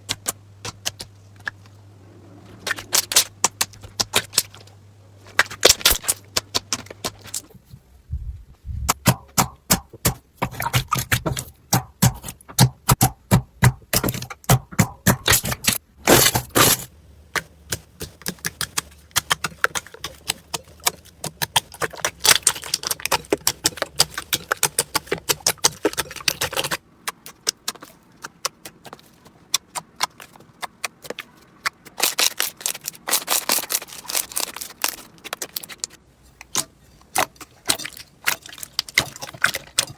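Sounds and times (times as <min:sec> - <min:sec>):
slime crackling and popping: 0:09.4 - 0:36.6.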